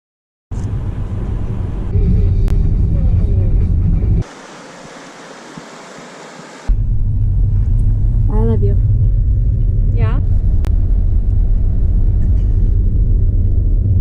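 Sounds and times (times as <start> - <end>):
road and wind noise rumbling: 0.5 - 14.0
steady hiss: 4.2 - 6.7.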